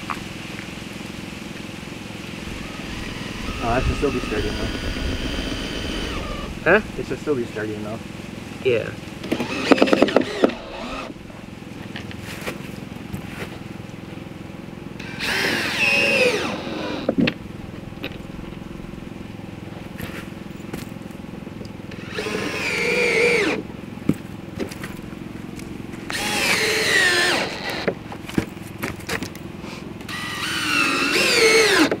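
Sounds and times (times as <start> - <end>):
power drill running: 2.4 - 6.8, 9.2 - 11.2, 15.0 - 17.1, 21.9 - 23.6, 26.1 - 27.9, 30.1 - 32.0.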